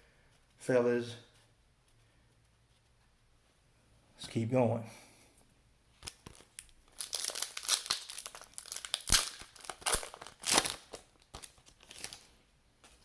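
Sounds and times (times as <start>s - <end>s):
foil wrapper tearing and crinkling: 6.0s - 12.3s.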